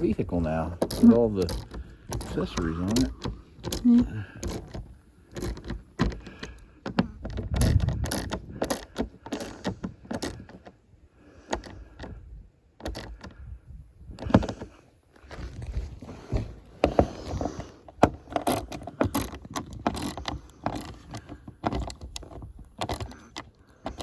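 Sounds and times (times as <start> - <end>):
tools and metal hardware clanking: 0.0 - 10.6.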